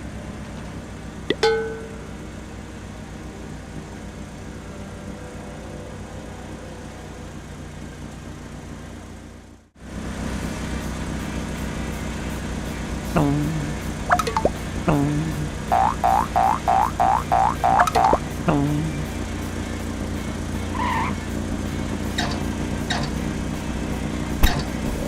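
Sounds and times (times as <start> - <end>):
cartoon vehicle engine idling: 0.0 - 9.7, 10.6 - 25.0
springy cartoon sound effects: 1.3 - 2.1, 13.2 - 19.1.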